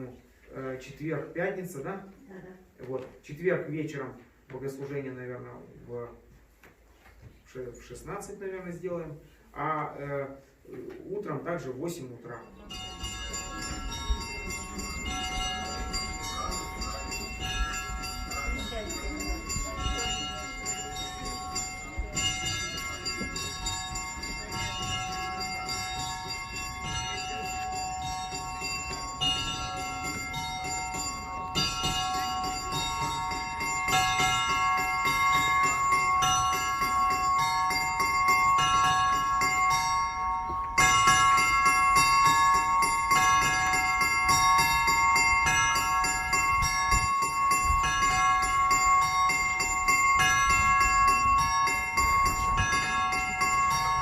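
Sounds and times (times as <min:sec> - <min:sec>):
church bells ringing: 0:12.4 - 0:54.0.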